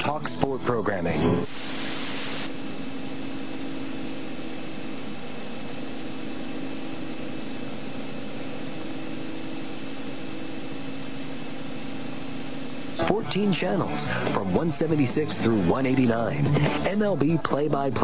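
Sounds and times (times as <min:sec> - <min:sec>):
steady hiss: 0:01.4 - 0:13.0
aircraft engine drone: 0:01.4 - 0:15.9.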